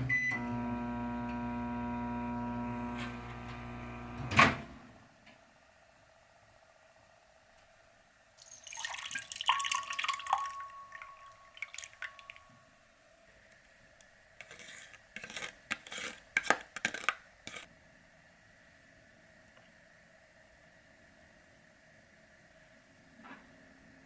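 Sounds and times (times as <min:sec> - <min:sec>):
water dripping or pouring: 0:08.4 - 0:12.6
ringing clink: 0:09.6 - 0:12.6
household handling sounds: 0:14.4 - 0:17.7.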